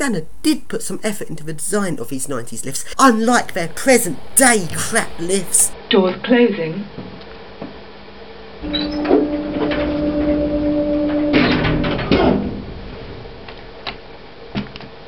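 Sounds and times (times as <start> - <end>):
lift motor hum: 8.6 - 13.6.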